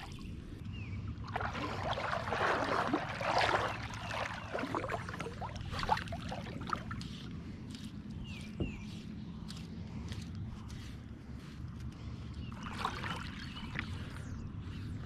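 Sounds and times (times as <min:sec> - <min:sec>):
water sloshing and splashing: 0:00.0 - 0:07.4, 0:12.5 - 0:15.0
low river rumble: 0:00.0 - 0:07.5, 0:12.5 - 0:15.0.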